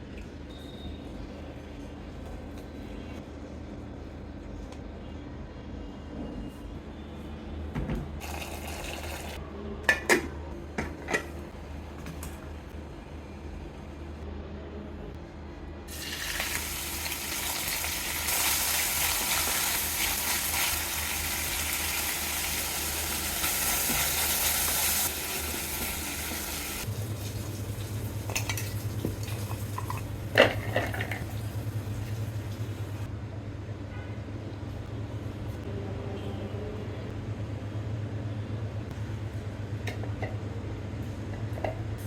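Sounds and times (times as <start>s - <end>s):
food sizzling in frying pan: 15.9s - 30.0s.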